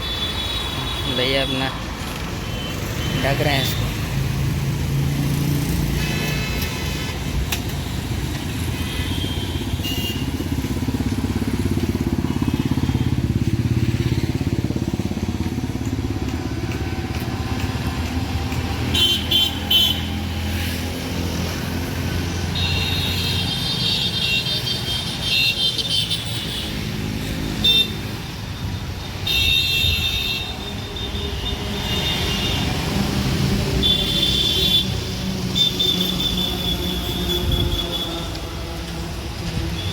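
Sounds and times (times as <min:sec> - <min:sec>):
motorcycle traffic rumble: 0:00.0 - 0:39.9
high-pitched horn honks: 0:35.6 - 0:38.4.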